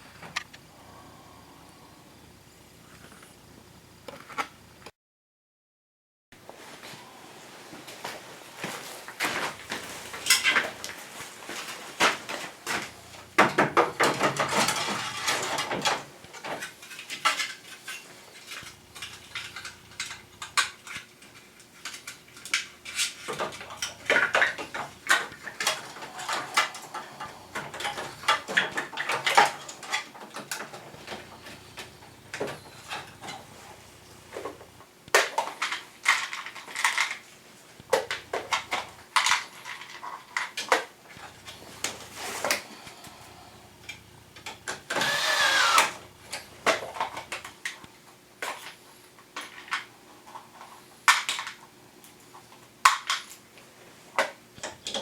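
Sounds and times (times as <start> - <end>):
hard plastic parts clattering: 9.2 - 37.2, 37.8 - 47.8.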